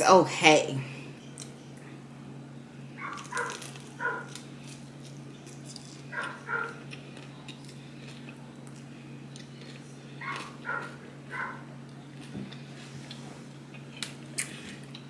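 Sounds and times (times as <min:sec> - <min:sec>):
dog barking: 0:03.0 - 0:04.4, 0:06.1 - 0:06.8, 0:10.2 - 0:11.7.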